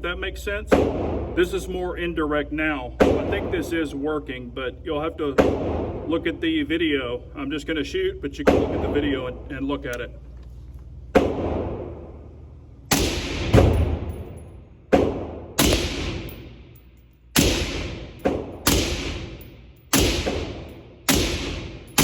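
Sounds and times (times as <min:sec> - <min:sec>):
rifle gunshots with echo: 0:12.9 - 0:16.8, 0:17.4 - 0:22.0.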